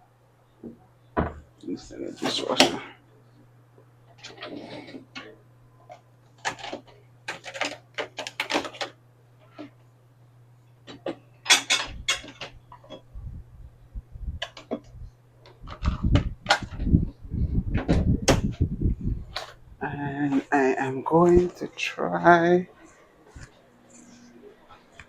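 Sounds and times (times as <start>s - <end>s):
steady low hum: 0.0s - 25.0s
dishes clattering: 10.9s - 13.0s.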